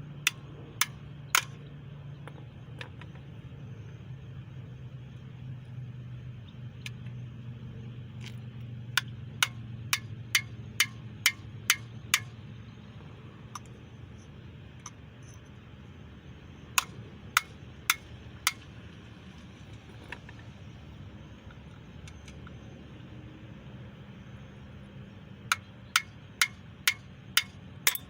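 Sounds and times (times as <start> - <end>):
steady low hum: 0.0 - 28.0
hammer striking metal: 9.4 - 12.4, 25.5 - 28.0.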